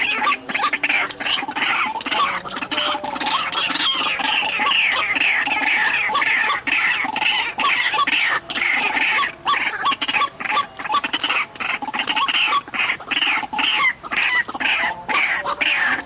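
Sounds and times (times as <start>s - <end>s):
waterhens calling harshly: 0.0s - 16.0s.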